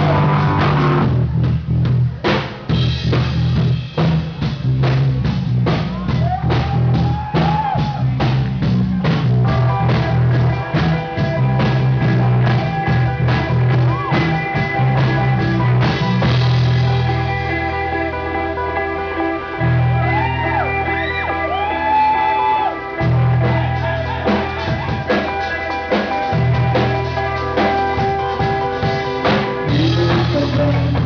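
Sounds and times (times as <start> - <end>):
electric guitar chords ringing: 0.0 - 1.3, 9.0 - 31.0
drums on steady beat: 0.0 - 17.3, 23.0 - 31.0
rock band playing: 0.0 - 31.0.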